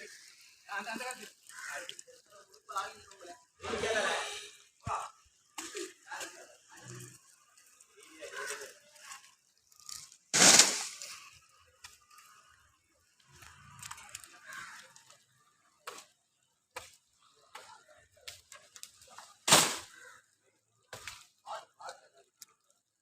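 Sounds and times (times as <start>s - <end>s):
loud sharp wood cracks: 9.8s - 12.0s, 13.4s - 15.2s, 15.8s - 21.3s.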